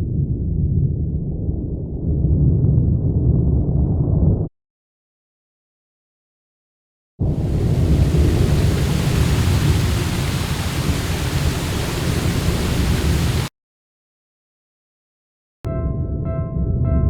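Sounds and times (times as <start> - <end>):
loud rumbling with hiss: 7.2 - 13.5.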